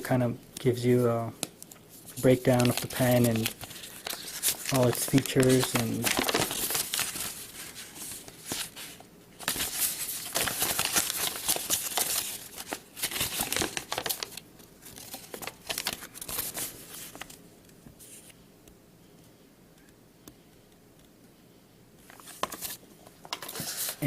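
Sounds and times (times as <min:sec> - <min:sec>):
paper crinkling and rustling: 0:01.6 - 0:17.4, 0:22.0 - 0:24.0.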